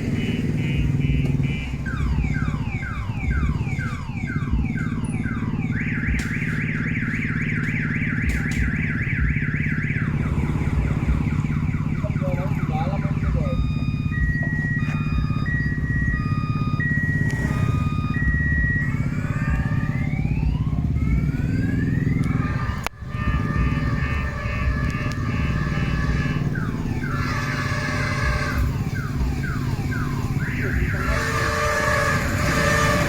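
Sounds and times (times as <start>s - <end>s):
locomotive engine rumble: 0.0s - 33.0s
electronic beep: 11.3s - 19.1s
locomotive horn chord: 17.2s - 20.4s, 21.4s - 33.0s.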